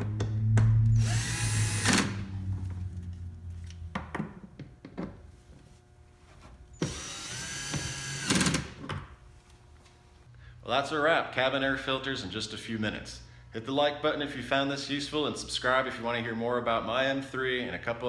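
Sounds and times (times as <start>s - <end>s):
power drill motor whine: 0.8s - 2.7s, 6.8s - 8.7s.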